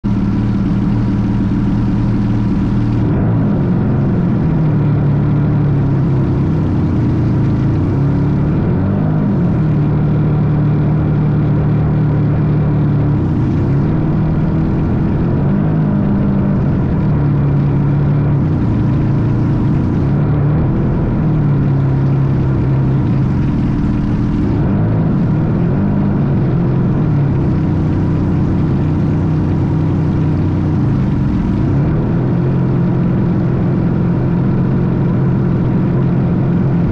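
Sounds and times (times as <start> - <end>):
model airplane engine and propeller: 0.0 - 36.9.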